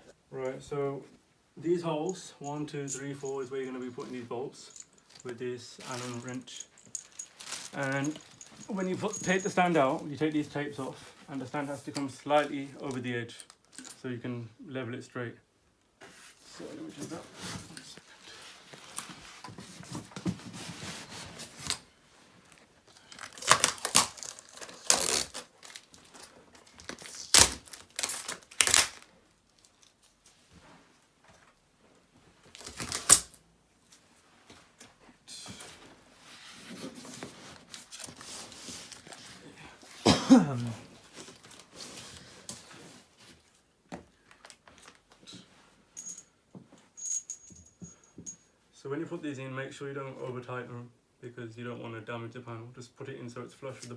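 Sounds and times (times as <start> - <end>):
plastic rustling: 3.2 - 14.0, 16.3 - 30.6, 32.4 - 34.0, 36.3 - 40.0, 40.8 - 43.5
plastic crinkling: 4.7 - 9.9, 22.5 - 30.2
small metallic clinks: 5.9 - 9.7, 46.0 - 48.5
packing tape ripping: 23.0 - 29.7, 32.5 - 33.4.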